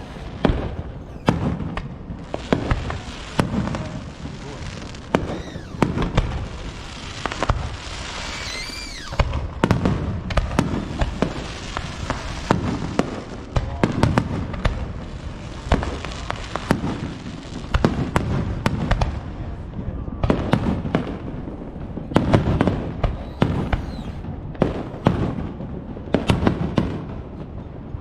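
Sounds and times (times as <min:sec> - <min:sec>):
firework shells bursting: 0:00.0 - 0:14.7, 0:21.0 - 0:25.6
whistling firework: 0:00.0 - 0:27.2.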